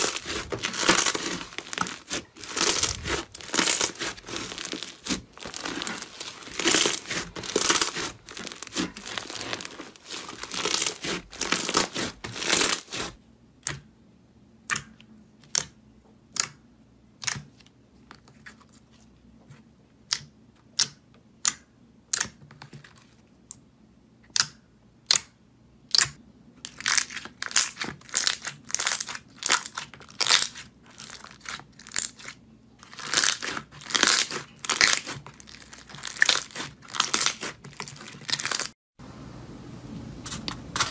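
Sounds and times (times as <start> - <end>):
slime popping: 0.0 - 13.1, 32.9 - 38.7
slime crackling: 0.0 - 13.2, 26.7 - 38.8.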